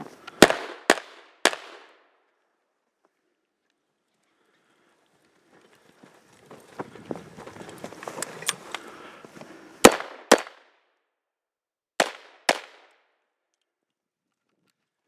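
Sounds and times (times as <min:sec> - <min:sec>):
rifle gunshots with echo: 0:00.4 - 0:02.0, 0:09.8 - 0:10.6, 0:12.0 - 0:13.0
shuffling: 0:04.4 - 0:09.8.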